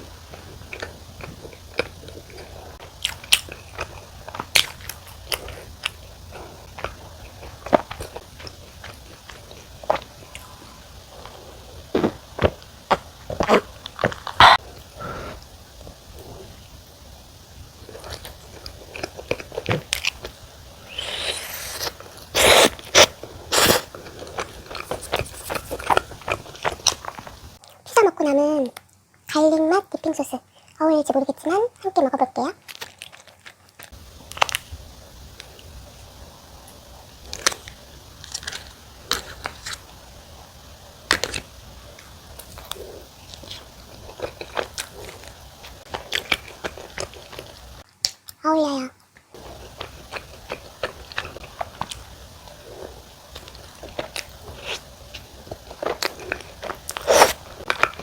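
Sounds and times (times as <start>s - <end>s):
crunchy bites: 0.0s - 16.5s, 17.8s - 27.6s, 36.6s - 40.0s, 49.4s - 58.0s
chewing crackles: 0.0s - 27.8s, 32.6s - 48.3s, 49.4s - 58.0s.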